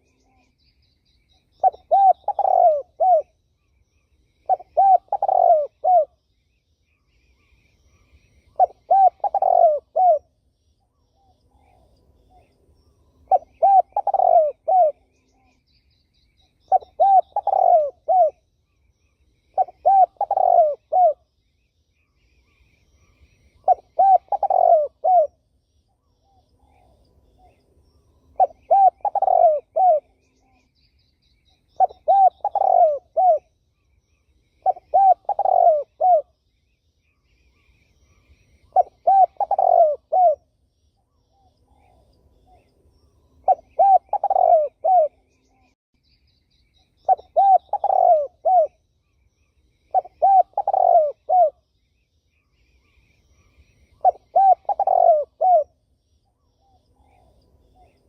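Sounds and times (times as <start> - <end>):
dove cooing: 1.6 - 3.4, 4.4 - 6.2, 8.6 - 10.3, 13.3 - 15.2, 16.7 - 18.4, 19.5 - 21.2, 23.6 - 25.4, 28.4 - 30.3, 31.8 - 33.5, 34.6 - 36.3, 38.6 - 40.4, 43.4 - 45.4, 47.0 - 48.8, 49.9 - 51.6, 53.9 - 55.8.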